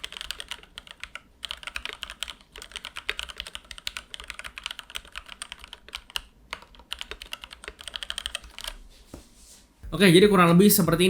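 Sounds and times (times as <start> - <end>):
fast typing on mechanical keyboard: 0.0 - 8.8.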